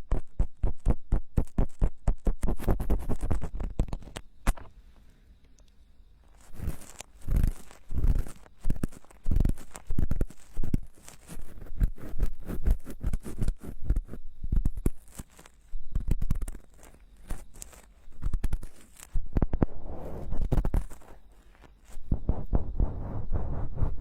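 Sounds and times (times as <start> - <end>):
tools scraping inside microphone ear: 6.3 - 24.0.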